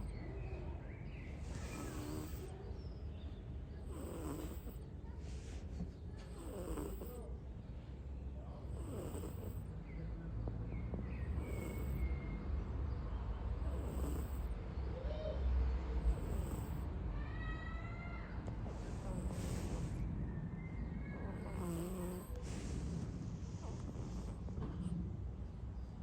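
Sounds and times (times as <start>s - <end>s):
cat snoring: 1.5s - 2.5s, 3.8s - 4.8s, 6.2s - 7.2s, 8.6s - 9.7s, 11.2s - 12.3s, 13.6s - 14.6s, 16.0s - 16.9s, 18.9s - 20.0s, 21.3s - 25.2s.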